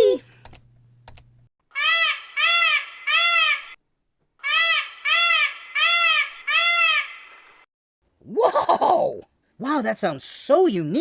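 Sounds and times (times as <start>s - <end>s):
peacock calling: 1.7s - 3.8s, 4.4s - 7.4s.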